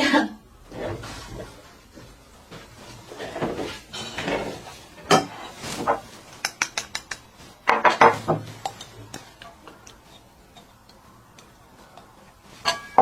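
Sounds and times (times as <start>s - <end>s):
dishes clattering: 2.5s - 13.0s
utensils clinking on dishes: 3.1s - 13.0s.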